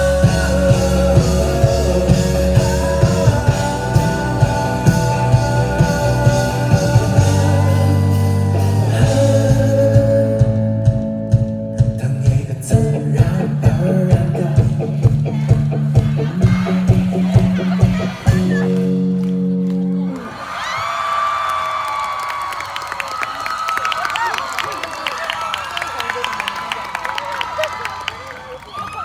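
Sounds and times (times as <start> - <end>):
person singing: 0.0 - 11.0, 12.0 - 19.0
steady drum beat: 0.0 - 18.8
rock music: 0.0 - 20.2
guitar: 0.0 - 20.4.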